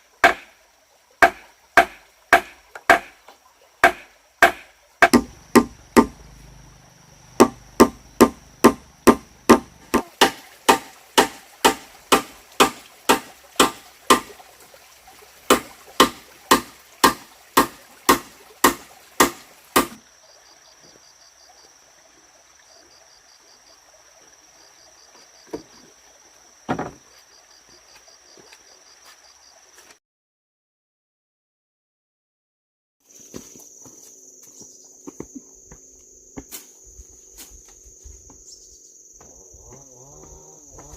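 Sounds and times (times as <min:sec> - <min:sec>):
wood being chopped: 0:00.2 - 0:00.5, 0:01.2 - 0:03.2, 0:03.8 - 0:06.3, 0:07.4 - 0:14.3, 0:15.5 - 0:20.0, 0:26.7 - 0:27.0
lone knocks: 0:03.8 - 0:06.2, 0:07.4 - 0:14.3, 0:26.7 - 0:27.0.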